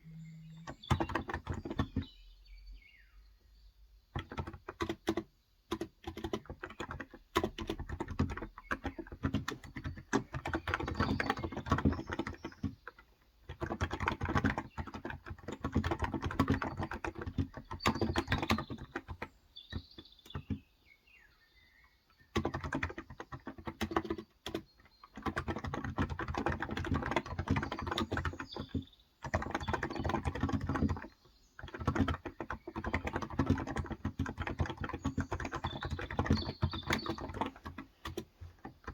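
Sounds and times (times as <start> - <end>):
faint bird calls: 0.0 - 3.3
fast typing on keyboard: 0.4 - 2.1, 4.1 - 20.7, 22.2 - 38.9.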